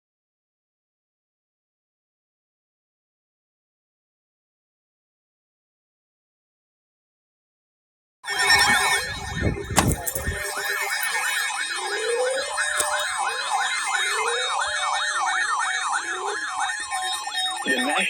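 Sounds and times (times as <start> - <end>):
emergency sirens yelping and wailing: 8.2 - 18.0.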